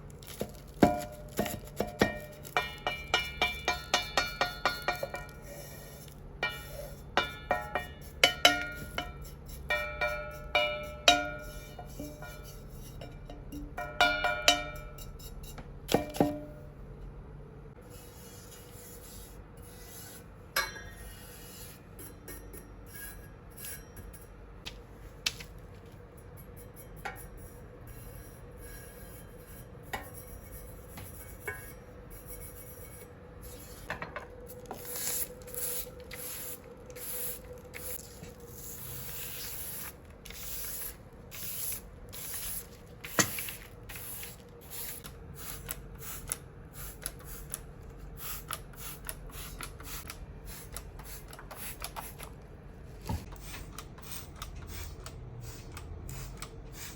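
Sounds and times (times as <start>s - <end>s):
faint steady hum: 0.0s - 55.4s
rasping scrubbing on metal: 17.8s - 22.2s.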